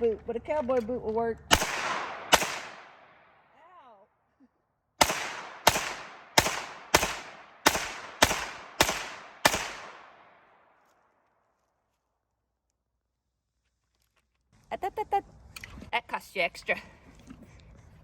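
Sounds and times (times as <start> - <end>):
gunshots with echoing tail: 1.5 - 3.5, 5.0 - 10.8.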